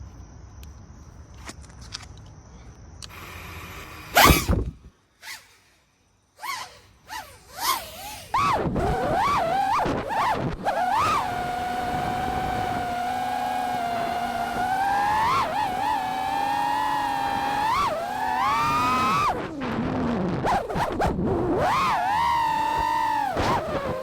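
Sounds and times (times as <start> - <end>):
quadcopter motors whining: 3.0 - 5.7, 6.4 - 19.9, 20.5 - 24.0.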